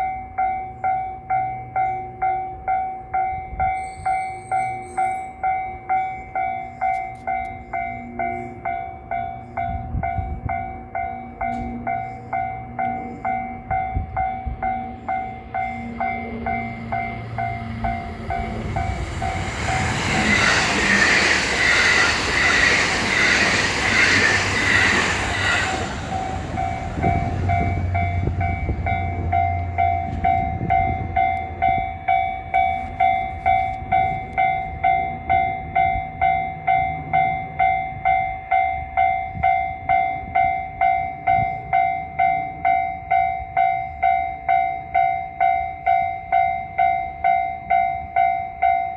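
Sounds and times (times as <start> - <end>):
level crossing bell ringing: 0.0 - 22.9
train rushing past: 7.3 - 38.7.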